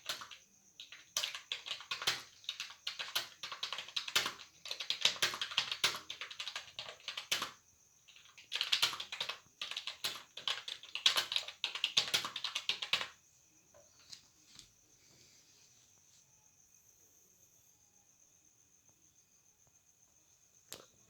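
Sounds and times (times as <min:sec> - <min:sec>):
rapid typing on keyboard: 0:00.0 - 0:13.2.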